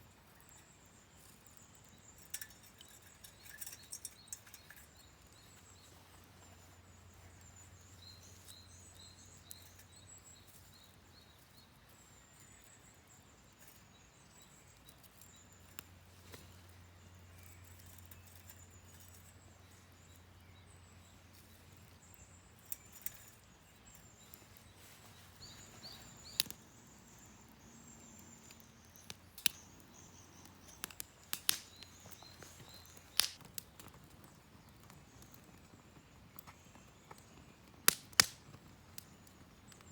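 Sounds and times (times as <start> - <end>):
small birds chirping: 0.0 - 39.9
sharp cracks: 30.6 - 33.6, 37.9 - 38.5.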